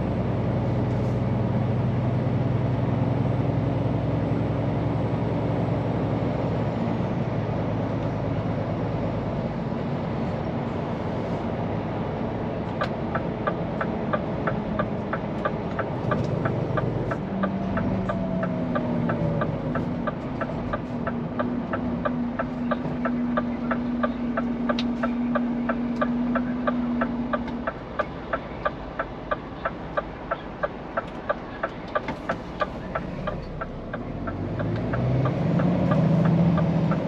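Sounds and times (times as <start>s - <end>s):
truck diesel engine running: 0.0s - 37.0s
regular ticking: 12.8s - 37.0s.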